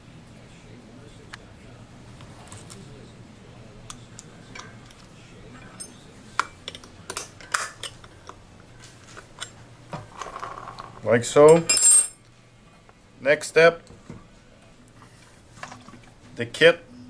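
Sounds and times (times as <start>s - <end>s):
metal parts clicking and clinking: 10.2s - 12.2s.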